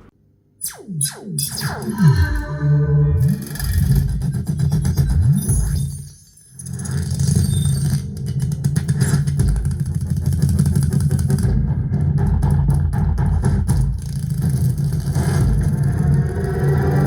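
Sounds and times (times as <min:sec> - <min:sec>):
heavy pulsing low rumble: 0:01.4 - 0:05.6.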